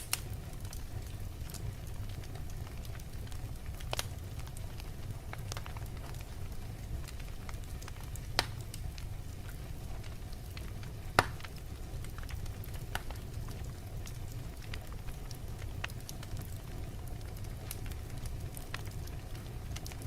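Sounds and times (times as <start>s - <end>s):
sharp fire pops: 0.0s - 14.9s
wood fire crackling: 0.0s - 20.0s.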